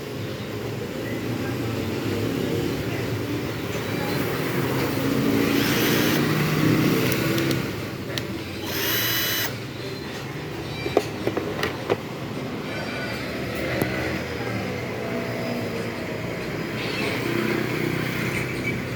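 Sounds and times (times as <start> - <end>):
cordless drill running: 5.4 - 6.4, 8.6 - 9.6.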